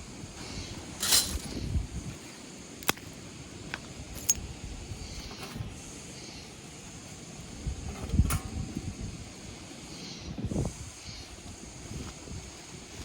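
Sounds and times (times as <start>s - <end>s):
low rumble of wind or surf: 0.0s - 13.0s
rustling clatter: 1.0s - 1.6s.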